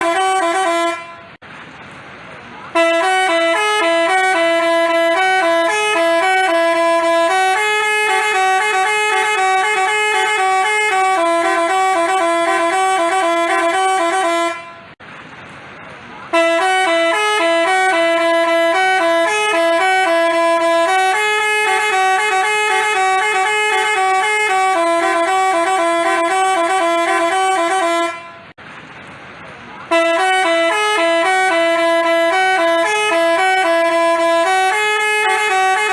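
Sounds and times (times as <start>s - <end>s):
bus horn playing a tune: 0.0s - 1.4s, 2.7s - 15.0s, 16.3s - 28.6s, 29.9s - 35.9s.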